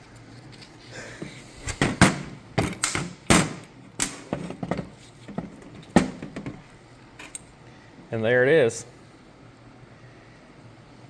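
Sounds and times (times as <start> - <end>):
tools knocking on metal parts: 1.2 - 7.4.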